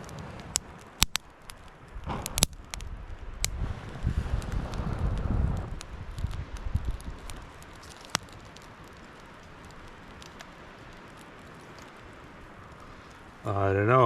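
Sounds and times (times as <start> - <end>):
sharp snap of fire: 0.0 - 13.5
wet wood fire crackling: 0.0 - 14.0
low rumble: 2.0 - 7.3.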